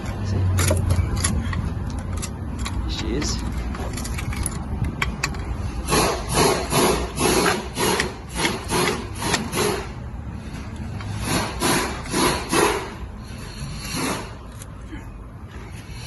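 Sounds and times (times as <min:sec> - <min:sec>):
ratchet wrench rasping: 0:11.0 - 0:14.8.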